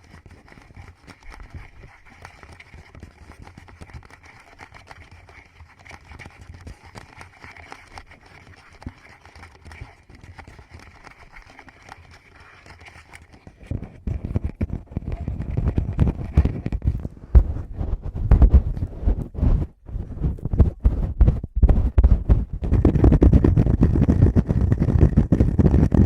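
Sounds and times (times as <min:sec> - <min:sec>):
fingers tapping on microphone: 0:13.7 - 0:19.4, 0:20.2 - 0:26.0.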